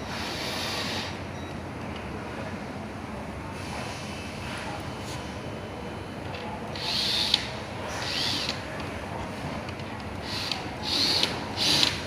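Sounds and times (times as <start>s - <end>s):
sharp mechanical click: 6.8s - 8.6s, 10.4s - 12.0s
small tool whirring: 6.8s - 8.6s, 10.2s - 12.0s.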